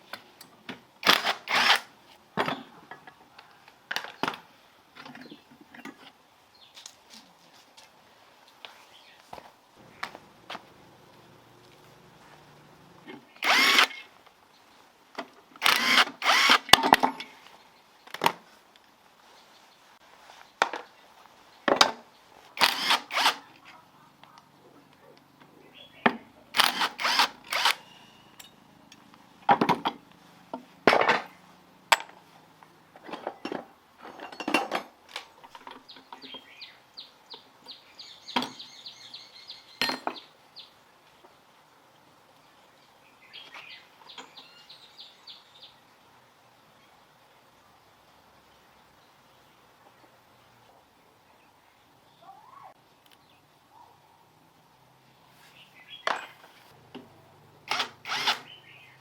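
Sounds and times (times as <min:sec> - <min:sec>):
power tool bursts: 0:01.0 - 0:01.9, 0:13.4 - 0:14.0, 0:15.6 - 0:16.8, 0:22.6 - 0:23.4, 0:26.6 - 0:27.9, 0:57.7 - 0:58.6.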